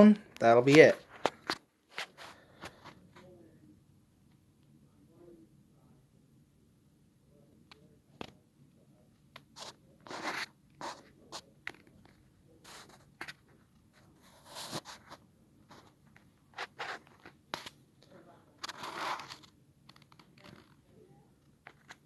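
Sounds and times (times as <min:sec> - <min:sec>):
scraping and rustling: 0:18.6 - 0:20.9.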